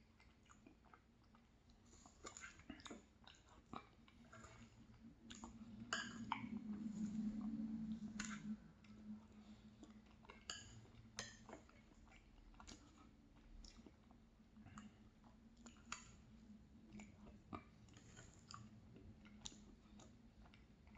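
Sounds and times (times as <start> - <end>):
quiet chewing: 0.0 - 20.9
low hum: 5.1 - 9.8.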